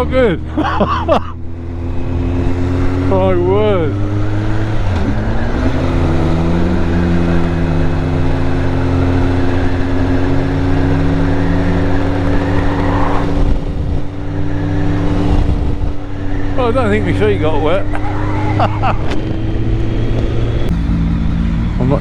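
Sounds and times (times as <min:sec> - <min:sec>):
motorcycle engine running: 0:13.4 - 0:22.0.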